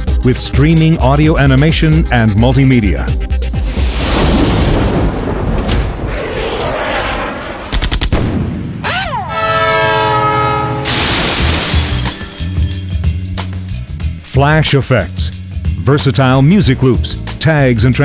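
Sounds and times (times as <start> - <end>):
fast rhythmic pattern: 0.0 - 3.3
horn-like chord of steady tones: 9.2 - 11.0
burst of noise: 10.8 - 12.0.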